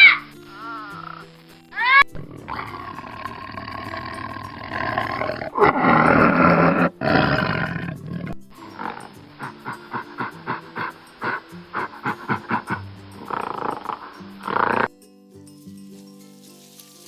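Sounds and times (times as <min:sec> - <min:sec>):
big cat roaring: 0:00.0 - 0:14.9
background music: 0:00.0 - 0:17.0
animal panting: 0:02.0 - 0:14.9.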